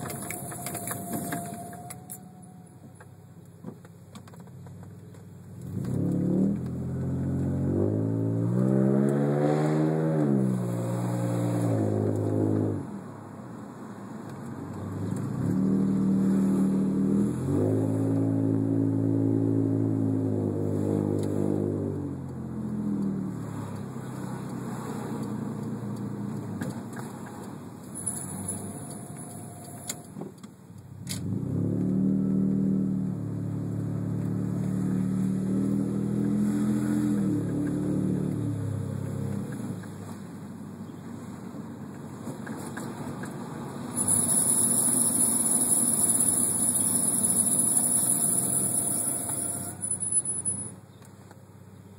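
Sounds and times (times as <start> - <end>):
brake squeal: 0.0 - 3.4, 26.9 - 30.2, 43.8 - 50.9
car engine accelerating: 5.6 - 13.1, 14.6 - 30.1, 31.0 - 40.3, 42.1 - 50.7.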